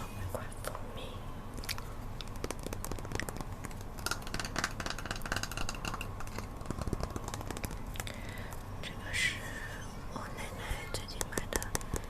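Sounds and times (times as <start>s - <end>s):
steady low hum: 0.0s - 12.0s
utensil tapping glass jar: 4.0s - 7.7s.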